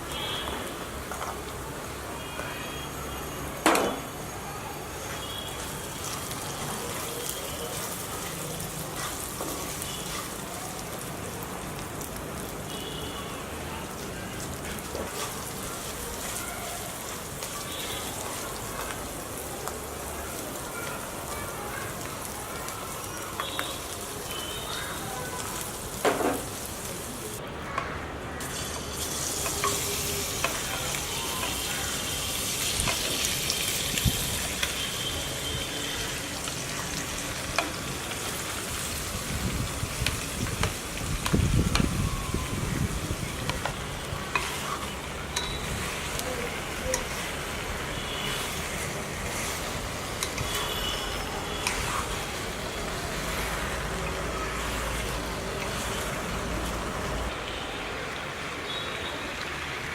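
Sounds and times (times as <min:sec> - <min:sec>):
chicken sizzling in a pan: 0:00.1 - 0:27.4, 0:28.4 - 0:57.4
spatula scraping a pan: 0:08.9 - 0:10.4, 0:44.3 - 0:46.2, 0:48.2 - 0:52.2.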